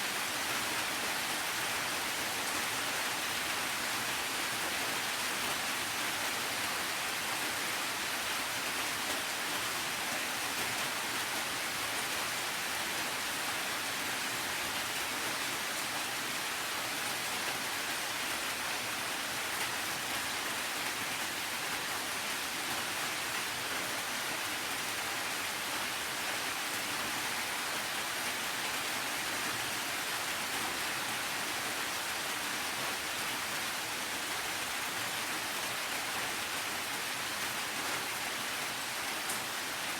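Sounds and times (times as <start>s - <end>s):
steady rainfall: 0.0s - 39.9s.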